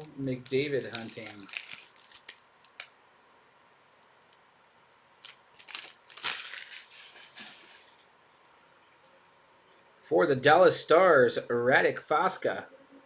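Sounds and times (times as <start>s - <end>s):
foil wrapper crinkling and tearing: 0.0s - 2.9s, 5.2s - 7.9s.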